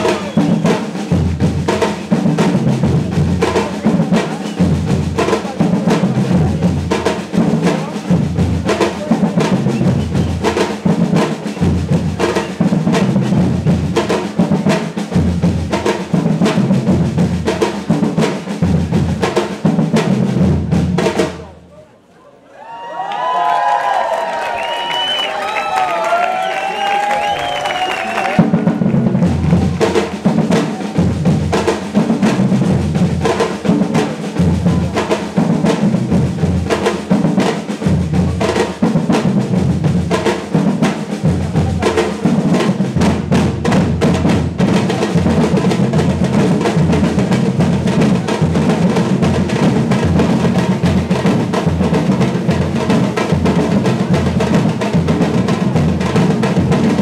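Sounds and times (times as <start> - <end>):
percussion band playing: 0.0 - 21.7, 23.1 - 57.0
snare drums: 0.0 - 21.7, 23.2 - 57.0.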